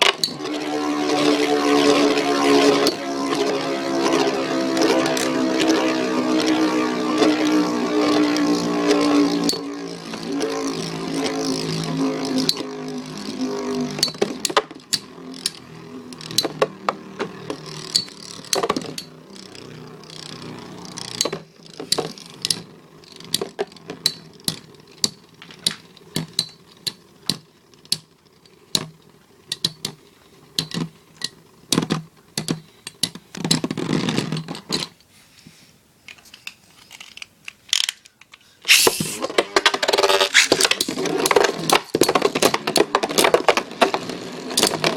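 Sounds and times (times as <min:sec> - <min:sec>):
burst of whirring and rattling: 0:00.0 - 0:22.5
spinning tops whirring: 0:00.0 - 0:32.3, 0:38.7 - 0:44.9
spinning tops clashing with clicks: 0:01.9 - 0:31.8.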